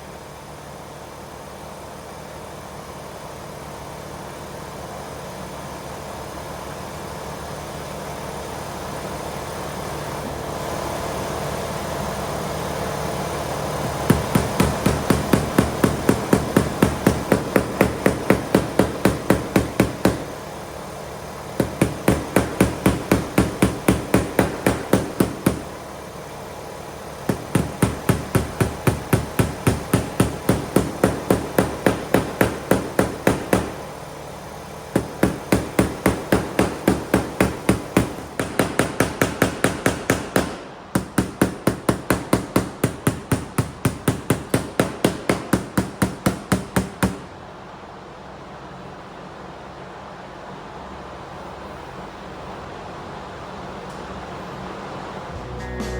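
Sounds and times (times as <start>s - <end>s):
rapid hammer blows: 13.5s - 26.4s, 27.0s - 47.5s.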